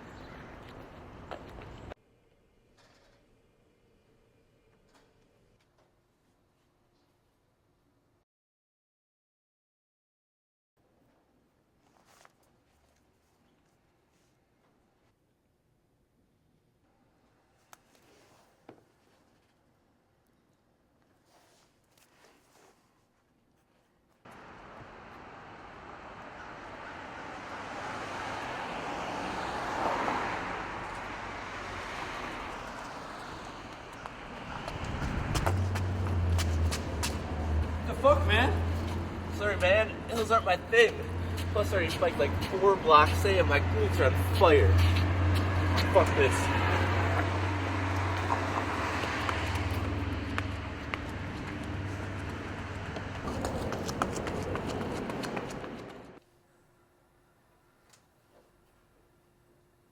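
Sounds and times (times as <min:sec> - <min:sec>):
road hiss: 0:24.3 - 0:55.3
vehicle passing by: 0:24.3 - 0:56.2.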